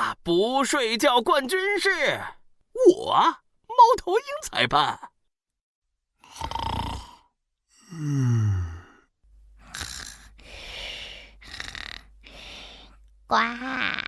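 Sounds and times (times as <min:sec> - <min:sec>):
cartoon snoring: 0:06.2 - 0:12.7.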